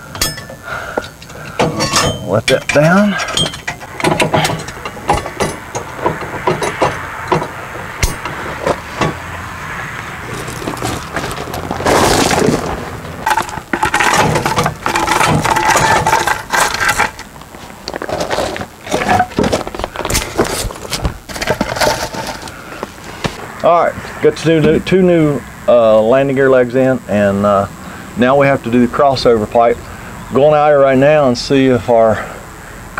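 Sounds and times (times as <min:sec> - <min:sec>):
metal clanks and clicks: 0:00.1 - 0:08.4, 0:13.2 - 0:17.3.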